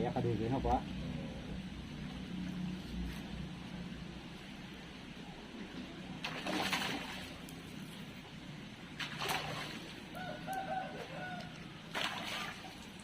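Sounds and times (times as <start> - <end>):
rooster crowing: 10.1 - 11.7.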